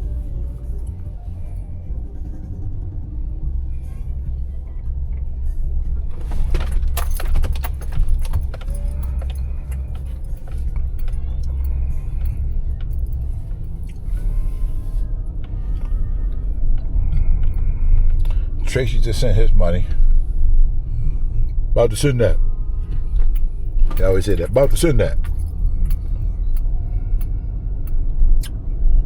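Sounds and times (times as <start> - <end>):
car low rumble: 0.0 - 29.0
keys jangling and clicking: 6.2 - 14.3, 23.3 - 27.3.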